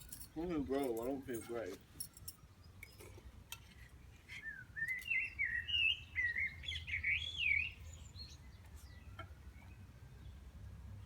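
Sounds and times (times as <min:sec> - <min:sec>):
bird warbling song: 0:04.3 - 0:09.8.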